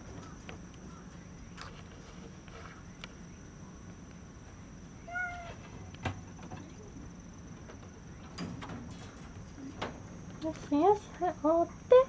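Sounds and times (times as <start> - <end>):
cat meowing: 5.0 - 5.6.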